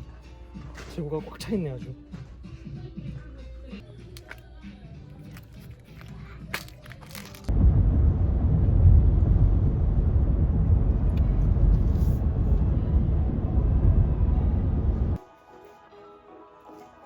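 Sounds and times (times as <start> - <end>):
loud low rumbling noise: 7.5 - 15.2.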